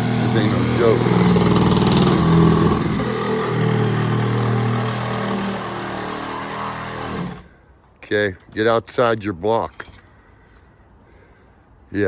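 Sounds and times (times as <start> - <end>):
engine-driven machine running: 0.0 - 7.5.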